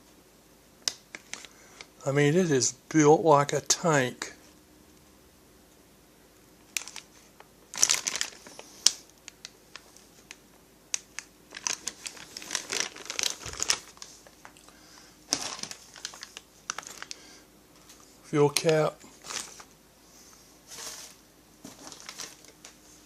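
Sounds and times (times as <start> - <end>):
packaging crinkling and rustling: 0.9 - 1.9, 6.7 - 17.2, 17.8 - 19.7, 20.7 - 23.0.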